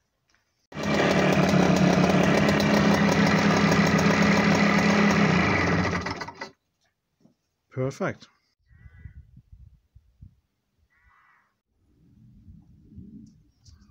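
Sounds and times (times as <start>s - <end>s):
motorcycle engine running: 0.7s - 6.5s.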